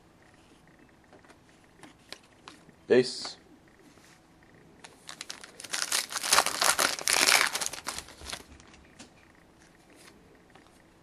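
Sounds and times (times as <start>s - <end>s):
card pack wrapper tearing: 5.0s - 8.5s.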